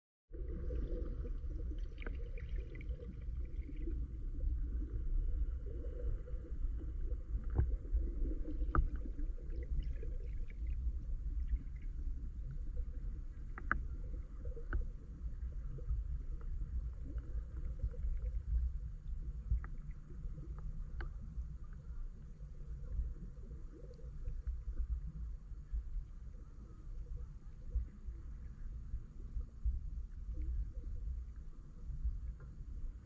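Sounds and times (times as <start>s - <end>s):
underwater rumble of moving water: 0.3s - 33.0s
underwater clicks and ticks: 0.5s - 5.1s, 5.8s - 28.4s.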